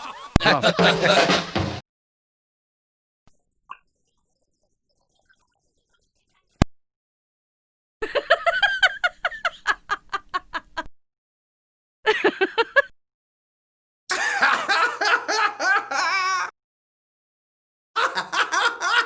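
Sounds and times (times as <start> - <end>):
laughter sound effects: 0.0 - 1.8, 8.0 - 10.9, 12.1 - 12.9, 14.1 - 16.5, 18.0 - 19.0.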